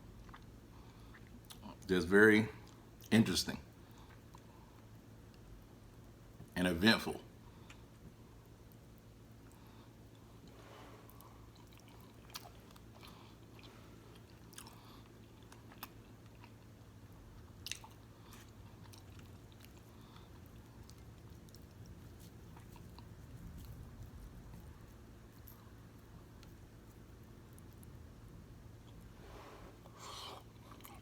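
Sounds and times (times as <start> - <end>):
chewing: 0.2 - 1.9, 8.7 - 28.0, 29.8 - 31.0.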